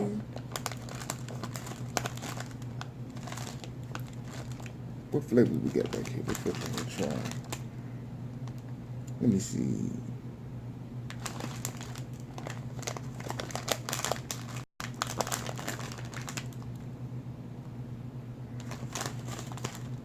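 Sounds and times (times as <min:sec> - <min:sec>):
candy packaging crinkling: 0:00.0 - 0:07.6, 0:11.1 - 0:16.8, 0:18.6 - 0:20.0
steady low hum: 0:00.0 - 0:20.0.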